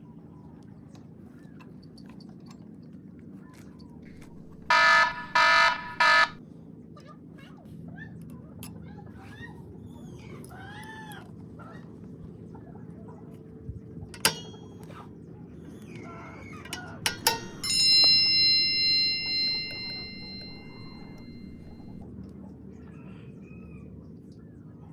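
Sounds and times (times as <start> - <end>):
metal part ringing: 4.1 - 6.4, 14.2 - 14.8, 16.6 - 22.0
metal clinks: 14.2 - 14.7, 16.7 - 22.0.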